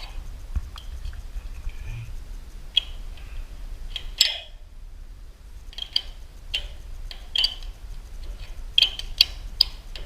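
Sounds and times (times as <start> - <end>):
wrench metallic clicks: 5.7 - 7.7.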